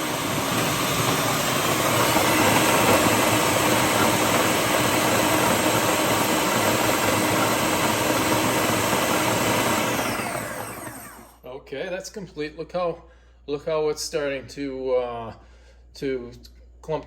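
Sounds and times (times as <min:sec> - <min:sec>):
food processor motor whirring: 0:00.0 - 0:11.4.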